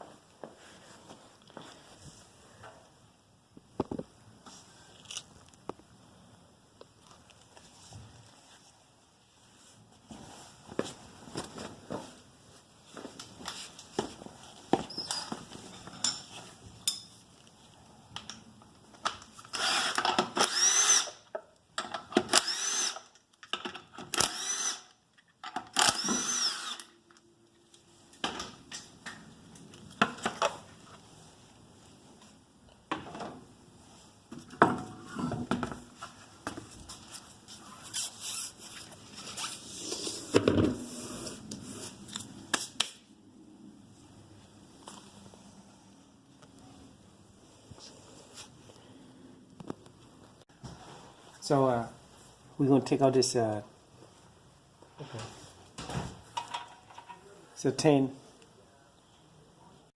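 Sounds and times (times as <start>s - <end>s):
power tool whirring: 19.5s - 21.2s, 22.3s - 23.1s, 24.1s - 25.0s, 25.7s - 27.0s.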